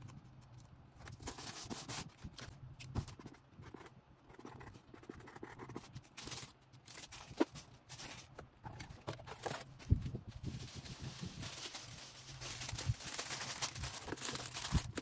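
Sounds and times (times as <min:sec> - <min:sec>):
packaging rustling: 0:06.0 - 0:15.0.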